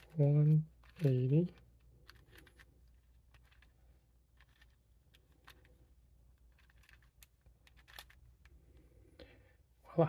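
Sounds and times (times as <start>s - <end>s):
puzzle cube clicks: 0.0s - 5.8s, 6.4s - 8.5s
low steady hum: 0.0s - 10.0s.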